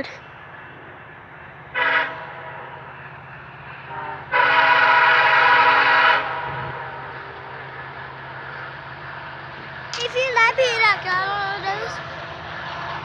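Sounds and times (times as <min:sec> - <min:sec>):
locomotive air horn blasts: 0:01.7 - 0:02.5, 0:03.9 - 0:07.2.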